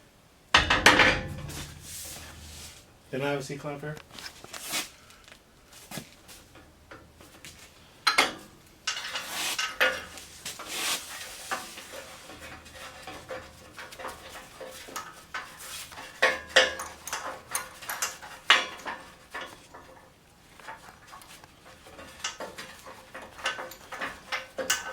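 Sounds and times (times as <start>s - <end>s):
metal tools clanking and rattling: 0.6s - 2.8s, 8.1s - 10.3s, 11.6s - 20.0s, 21.7s - 24.9s.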